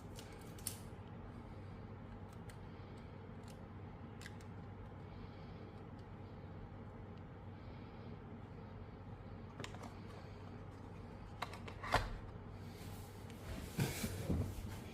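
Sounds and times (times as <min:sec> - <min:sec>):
steady low hum: 0:00.0 - 0:14.9.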